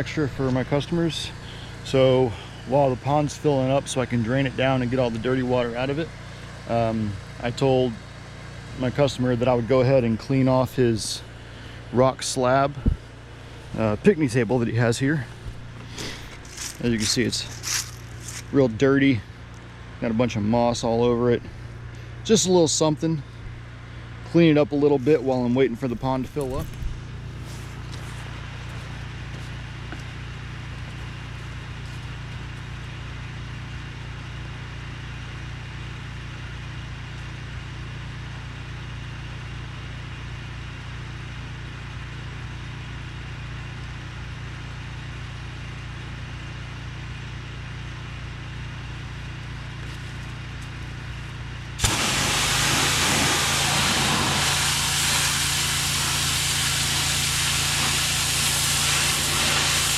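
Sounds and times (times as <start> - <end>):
pressure washer engine running: 0.0 - 47.6, 48.2 - 59.9
high-pressure water spray hissing: 51.8 - 59.9.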